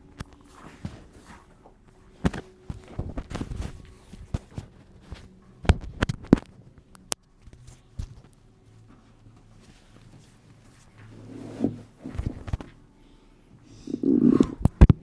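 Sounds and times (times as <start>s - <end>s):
chiropractic adjustment cracks: 2.2s - 8.4s.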